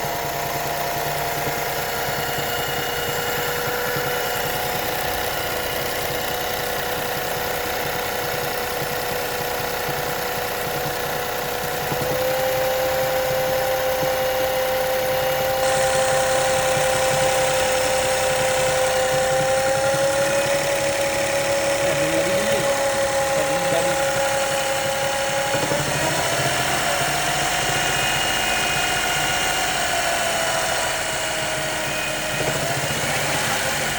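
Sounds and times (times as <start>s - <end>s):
car engine idling: 0.0s - 33.9s
steady whining tone: 0.0s - 33.9s.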